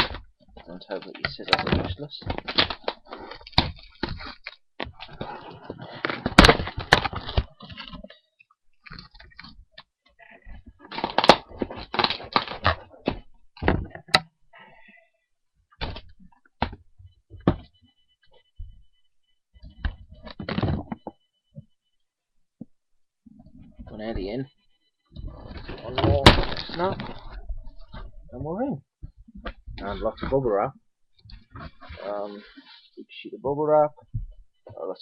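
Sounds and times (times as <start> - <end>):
cardboard ripping and crunching: 25.7 - 27.2.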